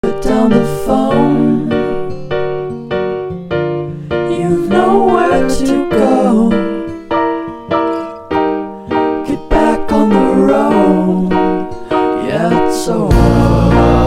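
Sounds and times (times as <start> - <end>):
person singing melody: 0.0 - 2.1, 4.0 - 7.0, 9.2 - 14.0
piano chords: 0.0 - 14.0.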